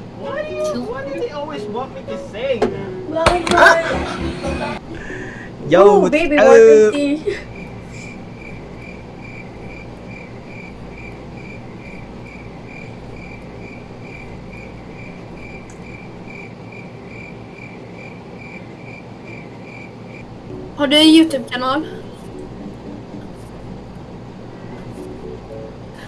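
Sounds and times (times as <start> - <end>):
low background hum: 0.0 - 26.0
cricket chirping: 7.0 - 20.7.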